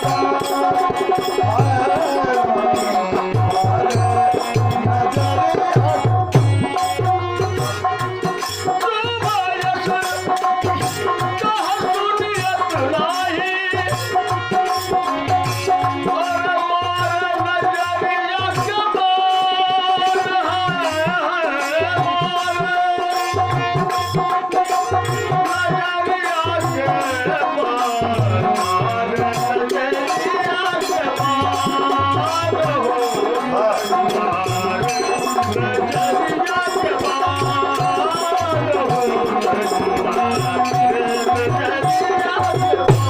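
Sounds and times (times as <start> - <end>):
ornamented instrumental melody: 0.0 - 17.3, 21.8 - 43.0
hand drum beat: 0.0 - 17.6, 27.9 - 43.0.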